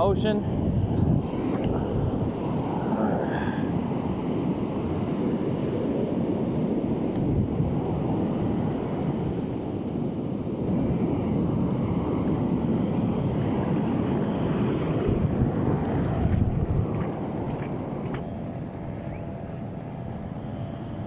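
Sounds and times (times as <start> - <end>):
ocean surf washing in: 0.0 - 21.0
wind buffeting microphone: 0.0 - 21.0.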